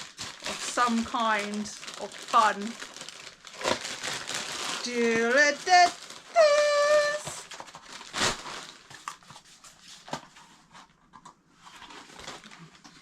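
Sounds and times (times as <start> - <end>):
packaging tearing: 0.0 - 9.3
packaging rustling and crinkling: 0.0 - 13.0.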